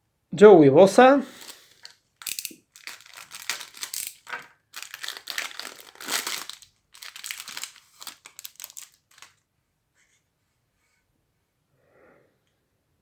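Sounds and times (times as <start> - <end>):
card pack crinkling and rustling: 1.3 - 9.4.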